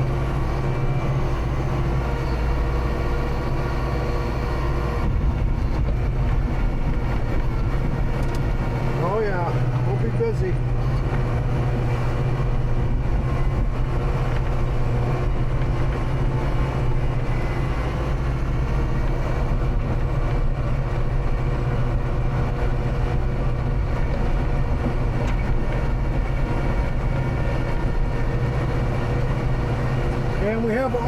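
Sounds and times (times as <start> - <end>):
tractor engine running: 0.0 - 31.0.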